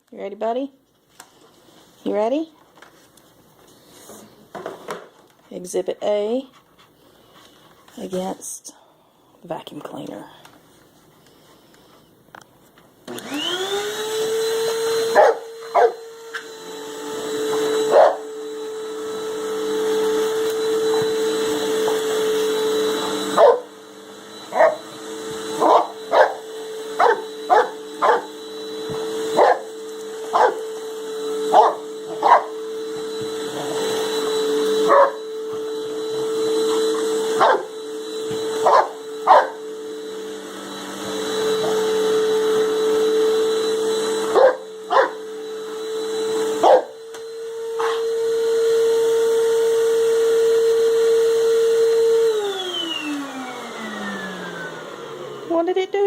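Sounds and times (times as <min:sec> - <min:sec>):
vacuum cleaner running: 0:01.4 - 0:08.7, 0:09.7 - 0:56.0
dog barking: 0:15.1 - 0:16.0, 0:17.9 - 0:18.3, 0:23.4 - 0:23.7, 0:24.5 - 0:24.8, 0:25.6 - 0:26.4, 0:27.0 - 0:28.3, 0:29.4 - 0:29.7, 0:30.3 - 0:30.7, 0:31.5 - 0:32.5, 0:34.9 - 0:35.2, 0:37.4 - 0:37.7, 0:38.6 - 0:39.6, 0:44.3 - 0:45.2, 0:46.6 - 0:47.0, 0:47.8 - 0:48.0.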